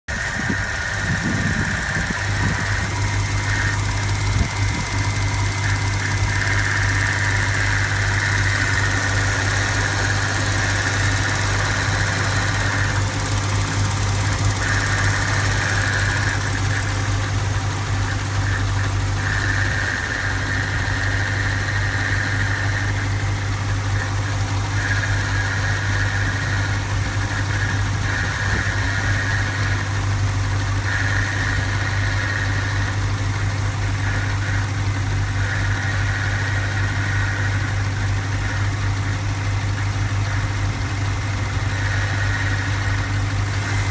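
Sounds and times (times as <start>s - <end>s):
car engine idling: 0.0s - 43.9s
high-pitched intermittent noise: 0.1s - 33.2s.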